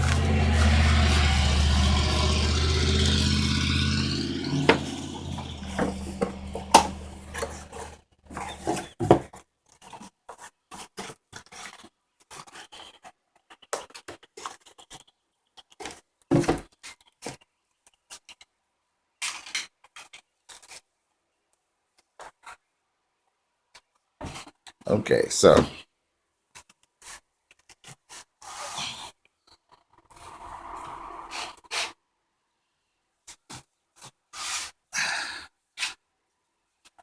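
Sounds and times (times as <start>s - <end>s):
low engine-like hum: 0.0s - 8.7s.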